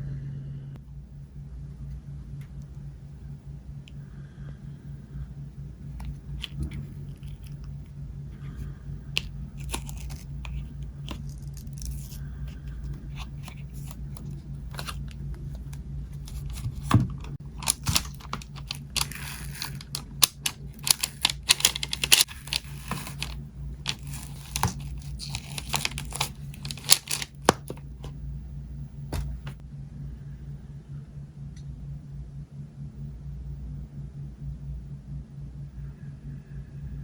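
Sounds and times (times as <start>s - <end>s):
crinkling and tearing: 9.1s - 28.2s.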